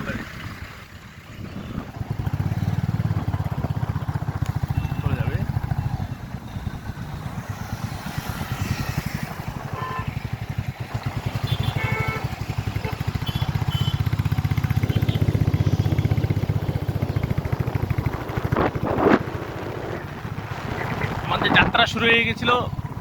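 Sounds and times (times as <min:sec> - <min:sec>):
motorcycle engine running: 0:00.0 - 0:23.0.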